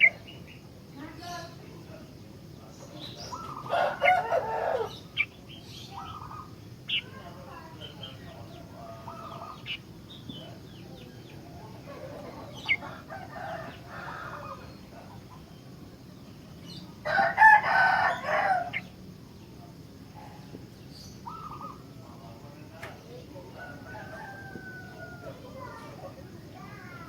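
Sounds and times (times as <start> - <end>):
bulbul chirping: 0.0 - 0.6
rooster crowing: 3.5 - 5.0, 12.5 - 14.7, 17.0 - 18.9, 23.5 - 25.7.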